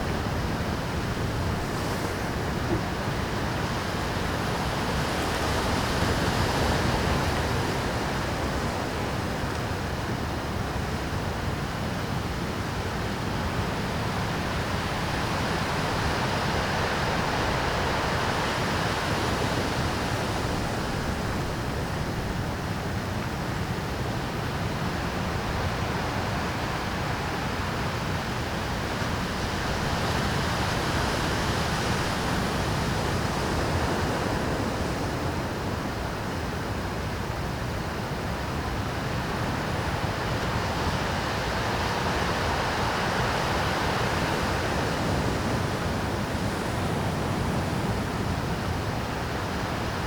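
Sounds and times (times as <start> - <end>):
surf breaking on rocky shore: 0.0 - 8.9.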